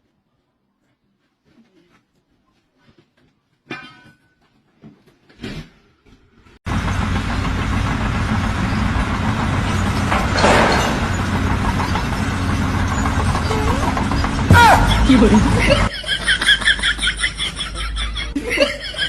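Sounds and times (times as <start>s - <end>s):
loud machinery noise: 6.7s - 18.3s.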